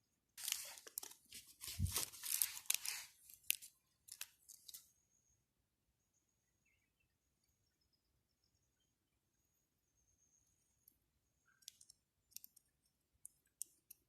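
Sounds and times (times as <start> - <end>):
dry material rustling and crackling: 0.4 - 4.8.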